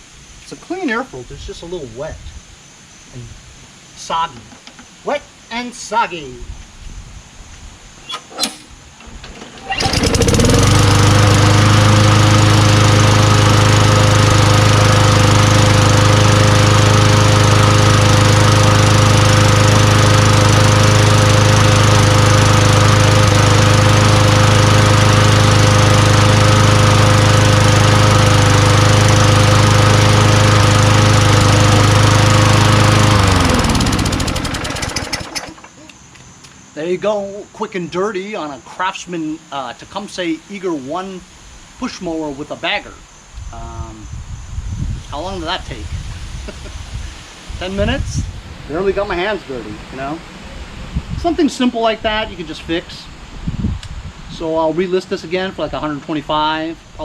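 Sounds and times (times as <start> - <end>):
lawn mower engine running: 8.0 - 35.8.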